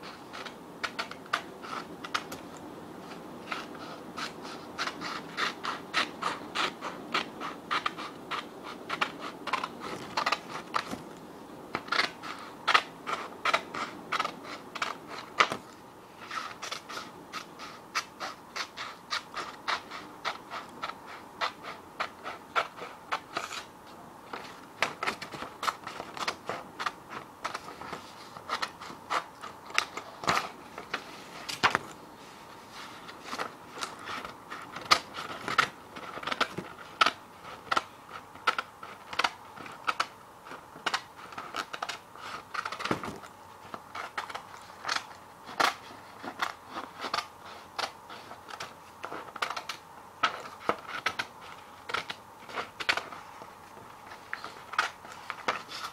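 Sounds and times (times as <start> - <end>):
faint paper rustle: 0.0 - 55.9
scissors snipping paper: 0.3 - 11.1, 11.7 - 23.7, 24.3 - 32.0.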